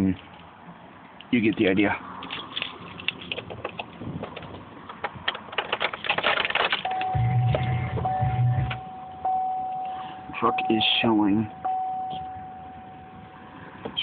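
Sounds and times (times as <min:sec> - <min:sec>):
clicks and rattling: 0:01.2 - 0:07.7
truck engine cranking and starting: 0:02.3 - 0:08.8
electronic warning tone: 0:06.9 - 0:13.0.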